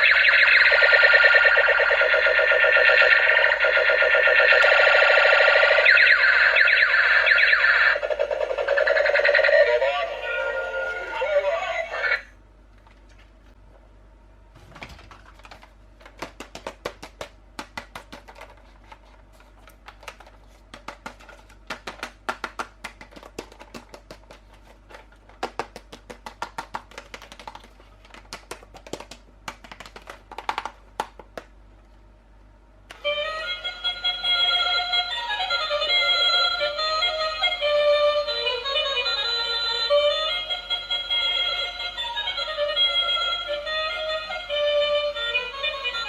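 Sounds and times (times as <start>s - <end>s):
music: 9.7s - 12.2s, 32.9s - 46.0s
plastic packaging clicks and taps: 15.1s - 31.6s.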